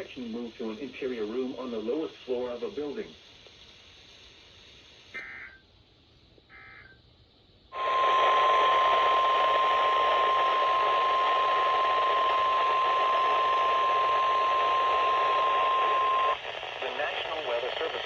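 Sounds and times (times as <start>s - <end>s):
steady warning alarm tone: 5.2s - 5.6s, 6.5s - 7.0s, 7.8s - 16.4s
radio static: 7.8s - 18.0s.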